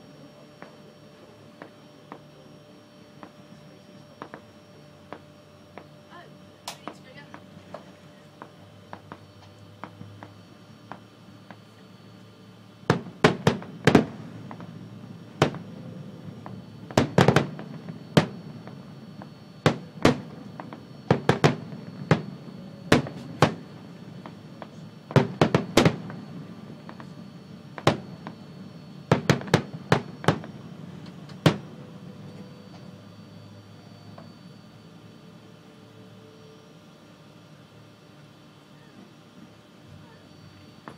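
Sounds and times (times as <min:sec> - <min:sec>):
fireworks bursting: 0:12.8 - 0:33.0.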